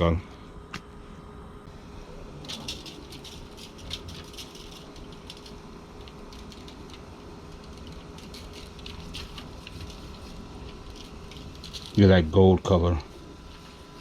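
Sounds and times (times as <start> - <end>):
seasoning shaker rattling: 2.4 - 12.2.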